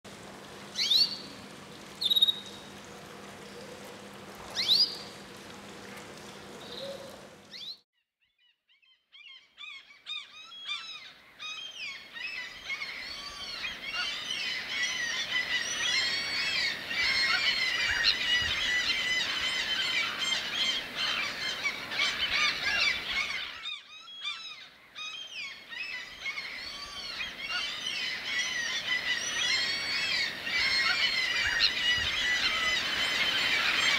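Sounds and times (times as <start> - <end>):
low steady hum: 0.1 - 7.8
bird calls: 4.5 - 5.2, 6.6 - 7.8, 8.8 - 33.9
dense bird chorus: 10.6 - 33.9.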